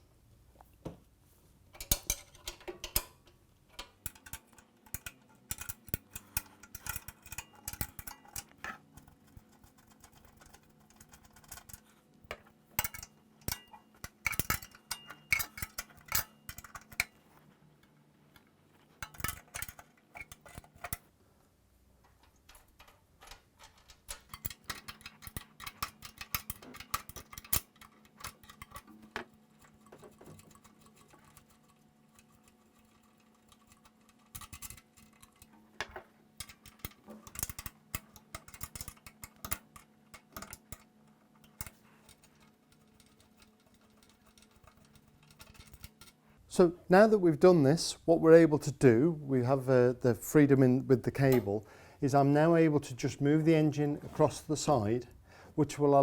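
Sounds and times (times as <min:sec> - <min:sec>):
spanner clicking on bolts: 0:01.8 - 0:11.8, 0:12.8 - 0:17.2, 0:22.3 - 0:35.5, 0:36.4 - 0:46.2.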